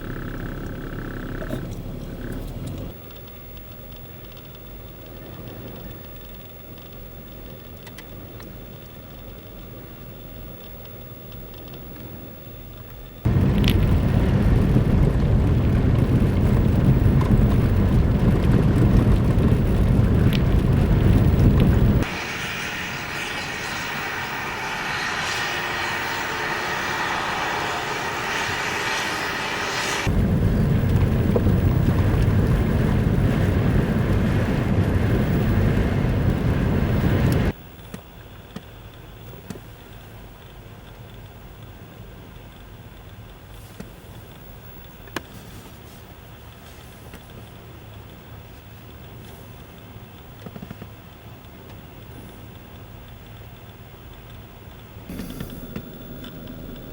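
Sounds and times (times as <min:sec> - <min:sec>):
wind blasting microphone: 0:13.3 - 0:37.6
high hiss with faint whine: 0:21.9 - 0:37.5.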